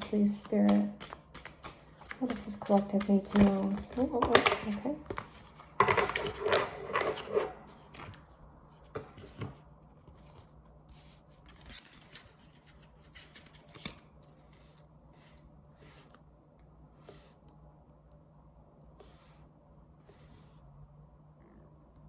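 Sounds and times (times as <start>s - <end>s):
cards being shuffled: 0.0s - 10.6s, 11.2s - 15.4s
faint low hum: 7.2s - 22.0s.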